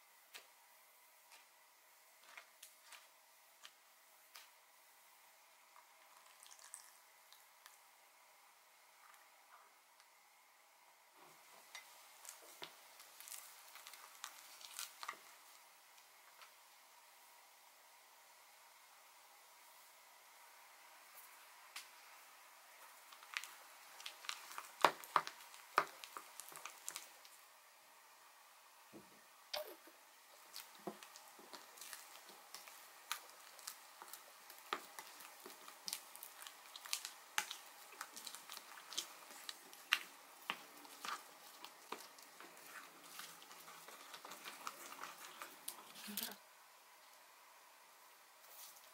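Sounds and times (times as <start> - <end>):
slime clicks and squishes: 30.5 - 46.3.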